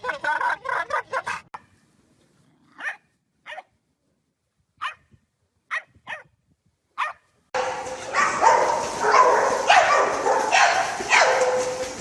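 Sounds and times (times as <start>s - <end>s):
dog barking: 2.8s - 3.7s, 4.8s - 5.0s, 5.7s - 6.3s, 7.0s - 7.2s, 8.1s - 11.8s.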